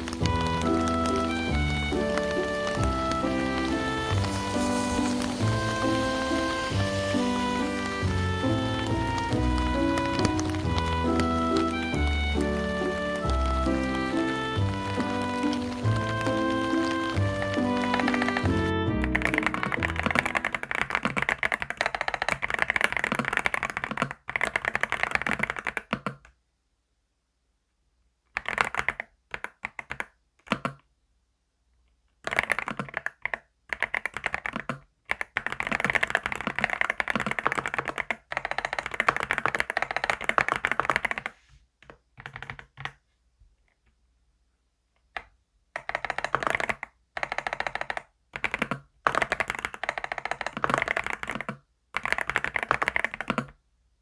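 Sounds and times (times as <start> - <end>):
rapid keyboard typing: 0.0 - 26.3, 28.3 - 30.8, 32.2 - 43.0, 45.2 - 53.6.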